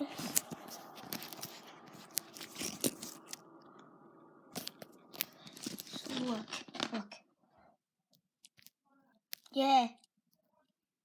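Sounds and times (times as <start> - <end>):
rustling: 0.0 - 7.2.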